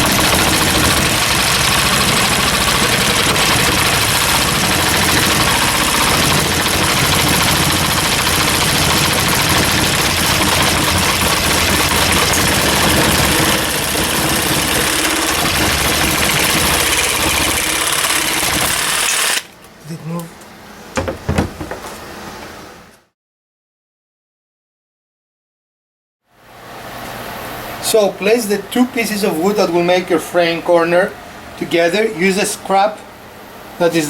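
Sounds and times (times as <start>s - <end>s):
power saw cutting wood: 0.0s - 19.5s.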